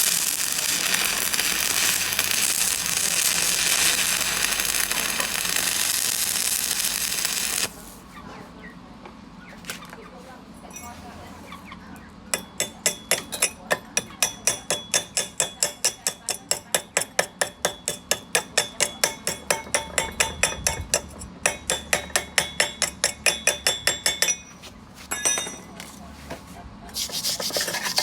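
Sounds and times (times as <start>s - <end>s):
hammer striking steel: 12.4s - 25.7s.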